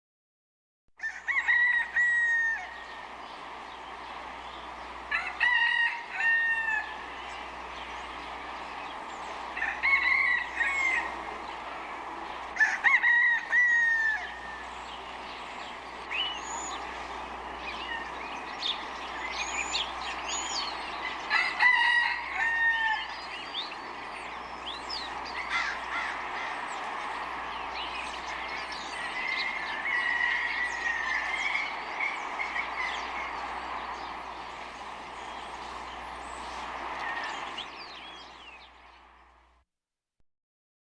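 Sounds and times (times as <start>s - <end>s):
rooster crowing: 1.0s - 3.2s, 5.0s - 7.4s, 9.4s - 11.6s, 12.4s - 15.0s, 16.1s - 36.4s, 37.0s - 38.4s
steady background hiss: 1.3s - 39.5s
small birds chirping: 2.0s - 39.6s.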